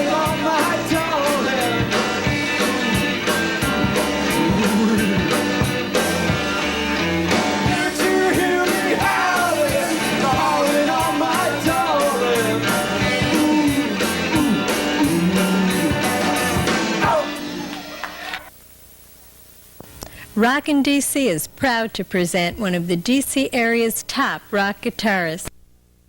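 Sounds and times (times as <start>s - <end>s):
drums on a steady beat: 0.0s - 18.0s
electric guitar: 0.0s - 18.5s.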